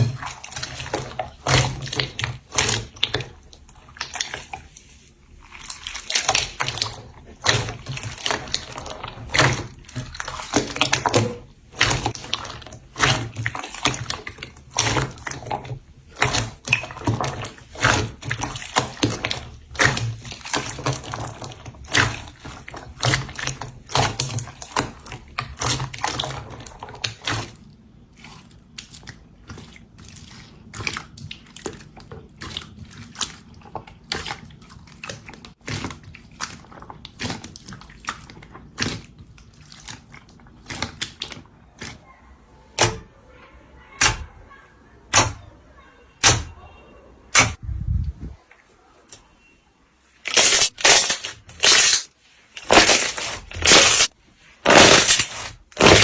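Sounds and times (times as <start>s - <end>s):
slime popping and crackling: 50.2s - 56.0s.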